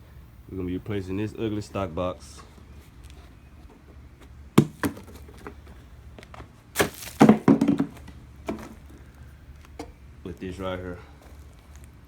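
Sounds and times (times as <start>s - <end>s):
plastic parts knocking and rattling: 4.6s - 5.8s, 6.8s - 9.0s.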